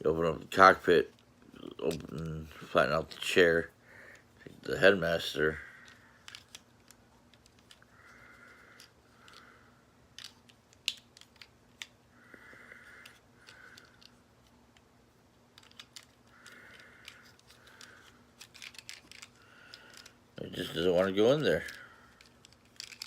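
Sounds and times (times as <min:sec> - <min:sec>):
plastic toy parts scraping: 0:04.1 - 0:09.6, 0:10.2 - 0:12.0, 0:12.6 - 0:14.8, 0:15.5 - 0:23.0
plastic toy parts clicking: 0:05.8 - 0:07.9, 0:08.7 - 0:09.5, 0:10.1 - 0:12.0, 0:12.8 - 0:14.9, 0:15.5 - 0:23.0.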